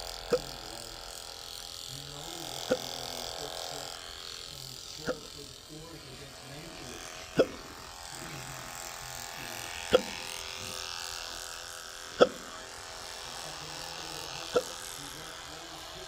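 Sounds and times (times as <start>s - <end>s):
man hiccuping: 7.4s - 7.6s, 12.2s - 12.5s.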